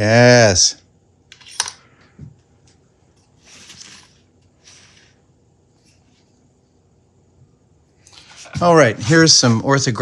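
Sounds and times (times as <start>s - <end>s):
rustling scrapes: 3.4s - 5.2s.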